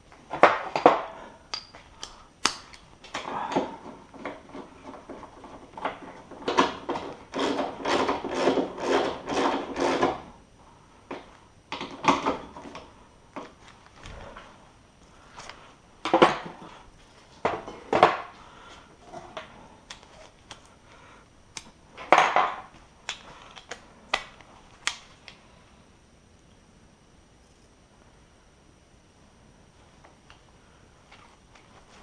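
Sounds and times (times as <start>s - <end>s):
tools clicking and knocking: 0.4s - 2.9s.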